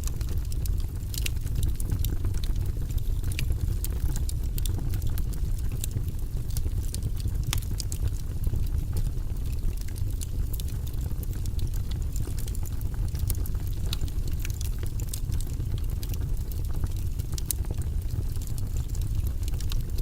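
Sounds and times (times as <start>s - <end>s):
fire crackling and popping: 0.0s - 20.0s
low fire rumble: 0.0s - 20.0s.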